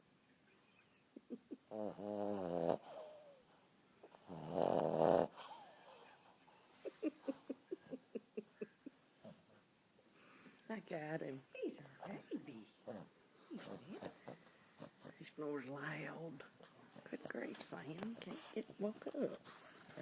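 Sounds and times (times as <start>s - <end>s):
dog snoring: 1.7s - 3.4s, 4.0s - 6.2s, 12.0s - 15.3s.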